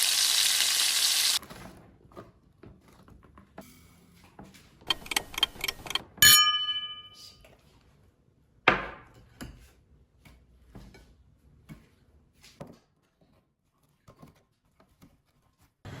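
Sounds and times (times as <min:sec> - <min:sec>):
sharp knocks and clatters: 0:04.9 - 0:07.1.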